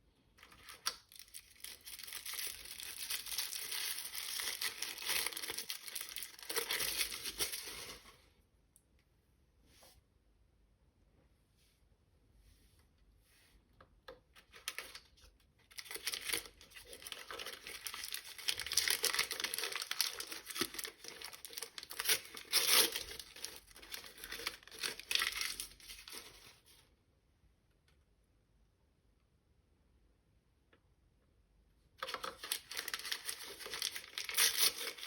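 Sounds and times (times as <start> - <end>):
plastic packaging crinkling: 0.4 - 8.1, 14.5 - 26.7, 32.0 - 35.0.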